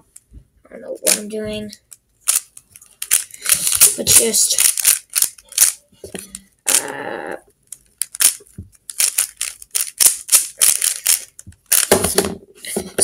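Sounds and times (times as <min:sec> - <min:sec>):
speed cube clicking: 0:02.2 - 0:05.8, 0:07.7 - 0:12.0.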